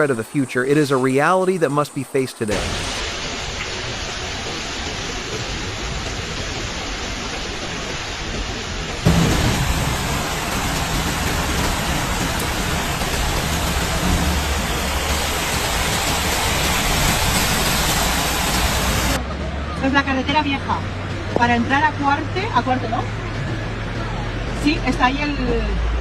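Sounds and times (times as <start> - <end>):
heavy rain: 2.4 - 19.5
low rumble: 2.7 - 19.6.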